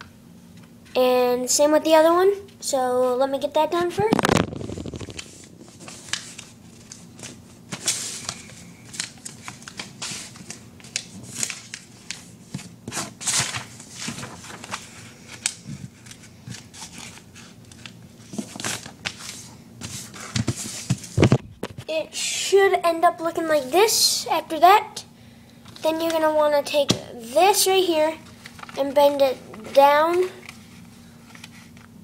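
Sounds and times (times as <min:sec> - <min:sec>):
paper being folded and creased: 0:04.1 - 0:21.4, 0:27.4 - 0:31.9.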